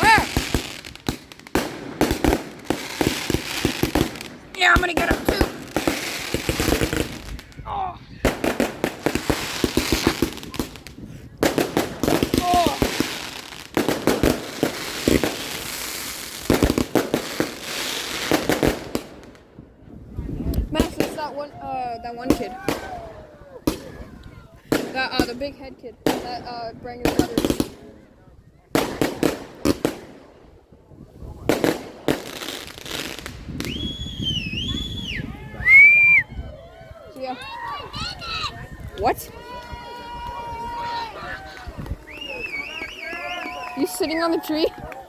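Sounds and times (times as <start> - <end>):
fireworks bangs: 0.0 - 7.6, 8.2 - 19.6, 20.6 - 21.5, 23.6 - 28.0, 28.7 - 30.4, 31.2 - 35.2
fireworks crackling: 0.0 - 7.6, 8.2 - 19.5, 20.6 - 23.0, 24.6 - 28.0, 28.7 - 30.4, 31.2 - 36.2, 39.0 - 45.0.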